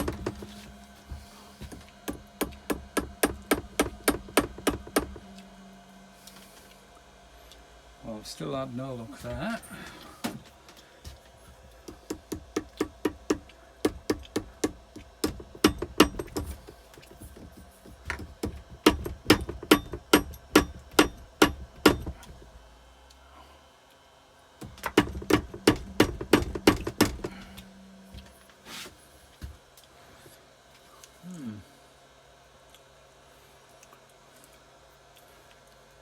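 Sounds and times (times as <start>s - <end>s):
hammer blows on metal engine: 0.0s - 5.3s, 12.0s - 22.5s, 24.6s - 27.7s.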